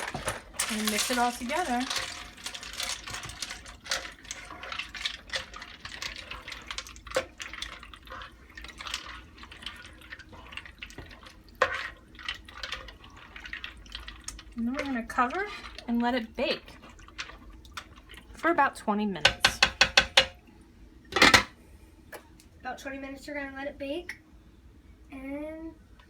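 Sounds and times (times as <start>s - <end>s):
spoon stirring pasta in sauce: 0.0s - 18.6s
spoon knocking pot: 19.2s - 20.4s.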